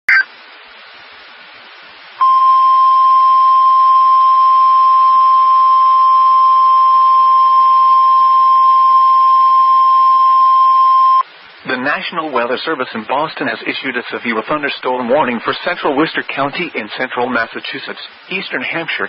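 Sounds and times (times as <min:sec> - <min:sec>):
radio hiss: 0:00.1 - 0:00.5, 0:11.1 - 0:19.0
loud steady high alarm tone: 0:02.2 - 0:11.2.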